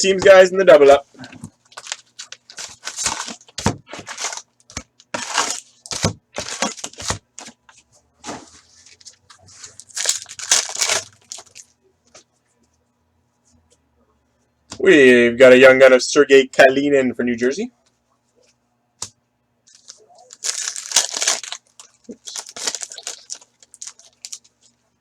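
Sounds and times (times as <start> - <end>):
cardboard and foil tearing: 1.7 - 7.2, 8.8 - 11.6, 19.7 - 24.5.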